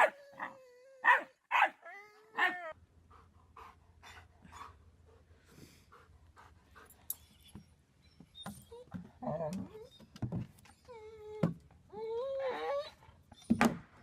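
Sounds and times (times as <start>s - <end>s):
dog barking: 0.0s - 0.2s, 1.0s - 1.8s.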